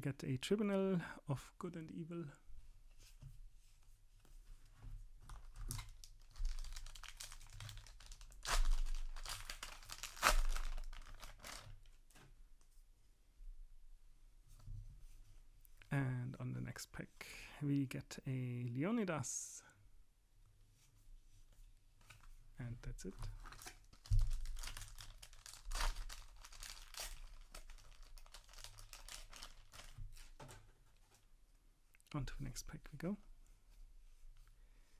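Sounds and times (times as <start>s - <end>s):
wrapper tearing: 5.4s - 11.8s, 23.4s - 30.4s
wrapper crinkling: 5.4s - 11.9s, 23.3s - 30.4s.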